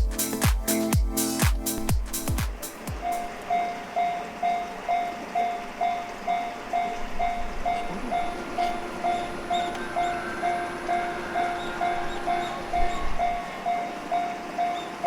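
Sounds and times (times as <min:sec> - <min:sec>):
level-crossing warning bell ringing: 0:03.0 - 0:15.0.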